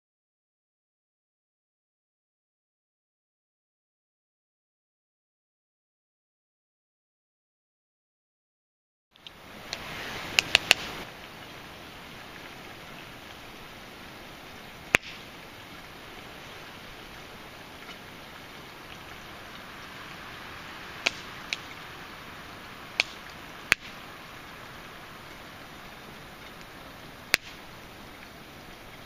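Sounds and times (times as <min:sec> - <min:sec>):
campfire hissing: 0:09.2 - 0:29.0
fire crackles and pops: 0:09.2 - 0:29.0.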